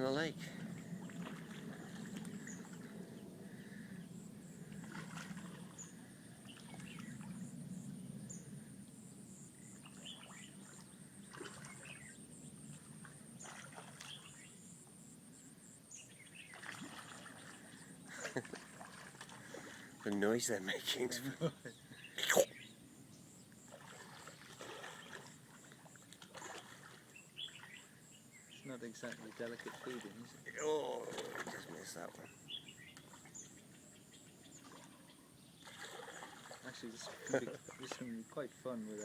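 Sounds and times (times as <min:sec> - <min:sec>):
faint bird chirps: 0:00.0 - 0:20.1, 0:21.2 - 0:39.0
fish splashing and slurping: 0:00.4 - 0:08.1, 0:09.6 - 0:14.9, 0:16.3 - 0:21.2, 0:23.6 - 0:28.1, 0:28.9 - 0:32.4, 0:34.5 - 0:38.3.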